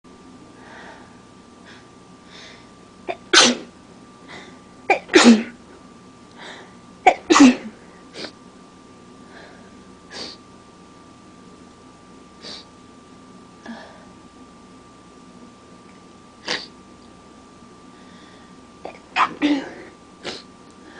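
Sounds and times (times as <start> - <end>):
person sneezing: 3.1 - 3.7, 4.9 - 5.6, 7.1 - 8.4, 16.4 - 16.7, 18.9 - 20.5.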